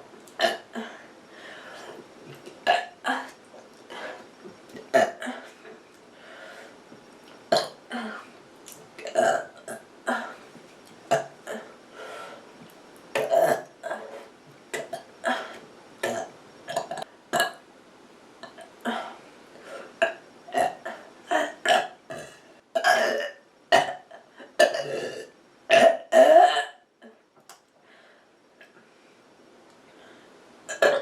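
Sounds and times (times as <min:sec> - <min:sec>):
person burping: 0:00.4 - 0:00.9, 0:02.3 - 0:03.4, 0:04.8 - 0:05.5, 0:07.5 - 0:08.2, 0:09.0 - 0:10.4, 0:11.1 - 0:11.7, 0:13.2 - 0:14.1, 0:14.8 - 0:17.6, 0:20.0 - 0:26.8, 0:30.7 - 0:31.0.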